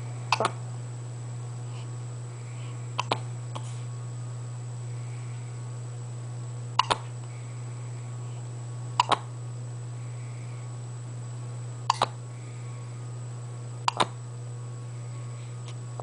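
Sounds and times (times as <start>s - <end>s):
steady low hum: 0.0s - 16.0s
hiccups: 0.3s - 0.6s, 6.8s - 7.1s, 9.0s - 9.3s, 11.9s - 12.1s.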